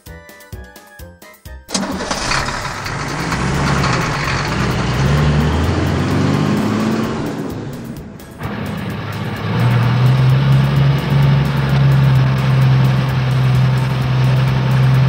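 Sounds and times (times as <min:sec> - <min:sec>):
light children's music: 0:00.0 - 0:02.2.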